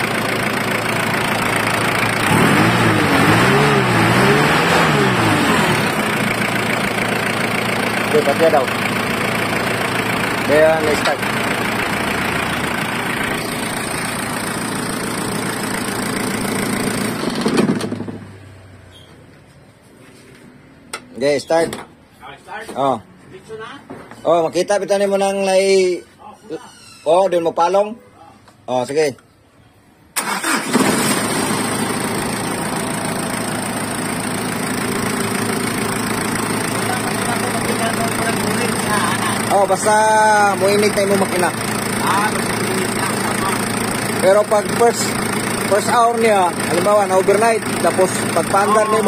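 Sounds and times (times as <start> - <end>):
diesel engine idling: 0.0 - 17.4, 30.2 - 49.0.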